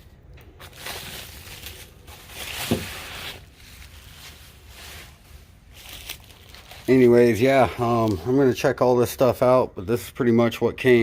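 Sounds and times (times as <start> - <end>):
packaging rustling and crinkling: 0.0 - 8.2.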